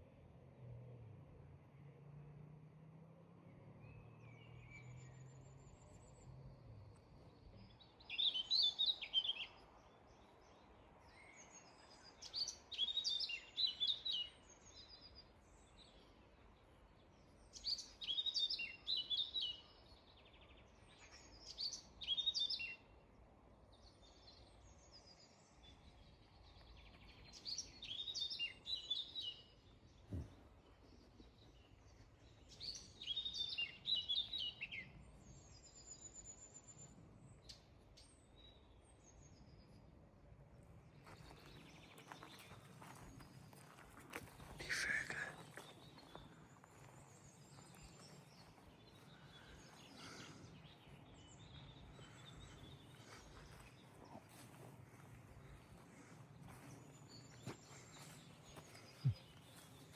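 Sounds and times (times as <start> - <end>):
songbirds singing: 0.0 - 59.9
faint bird calls: 43.6 - 47.0, 47.7 - 59.9.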